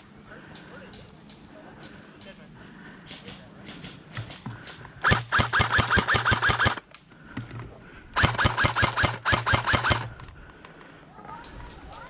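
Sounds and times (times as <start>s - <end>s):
airsoft gun firing bursts: 5.0s - 6.8s, 8.2s - 10.3s.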